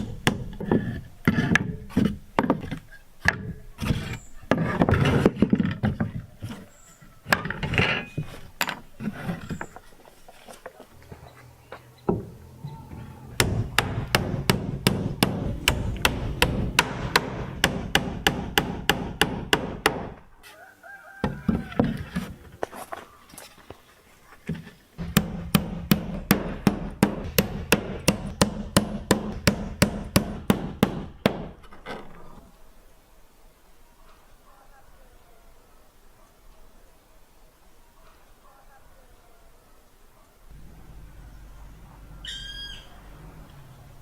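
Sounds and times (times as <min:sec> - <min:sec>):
hammering: 0:00.0 - 0:00.8, 0:12.0 - 0:20.2, 0:25.0 - 0:31.6.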